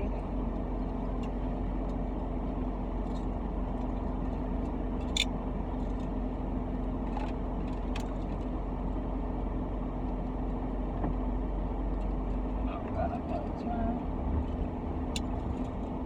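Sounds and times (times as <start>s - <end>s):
car engine hum from inside cabin: 0.0s - 16.0s.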